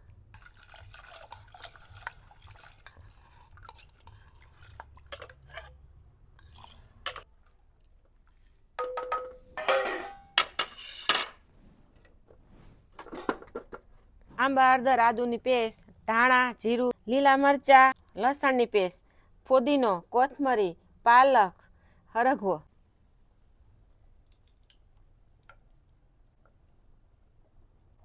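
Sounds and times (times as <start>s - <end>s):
metal pots and utensils clattering: 4.7s - 5.8s, 8.8s - 11.4s, 13.0s - 13.9s.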